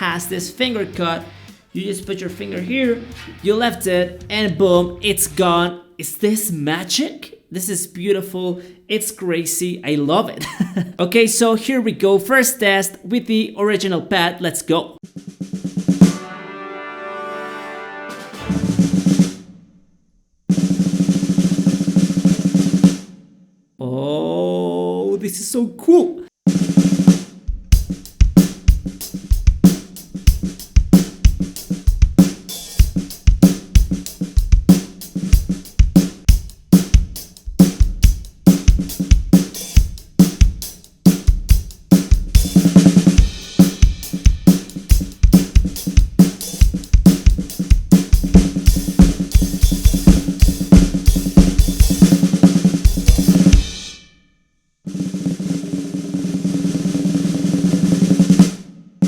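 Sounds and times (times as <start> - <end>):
drum kit beat: 0.0 - 5.7, 13.8 - 19.6, 26.5 - 54.0, 54.9 - 58.7
fast drum fills: 0.0 - 5.7, 13.8 - 16.4, 18.1 - 19.6, 20.5 - 23.1, 26.5 - 54.0, 54.9 - 58.7.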